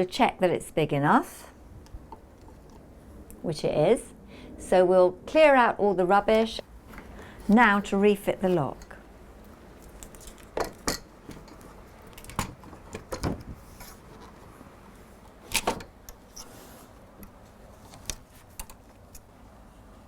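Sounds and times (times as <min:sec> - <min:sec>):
door lock metallic clicks and knocks: 0:12.2 - 0:13.5.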